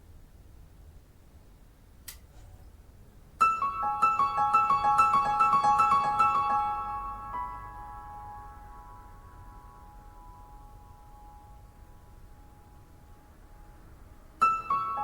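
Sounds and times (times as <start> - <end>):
solo piano music: 3.4 - 15.0.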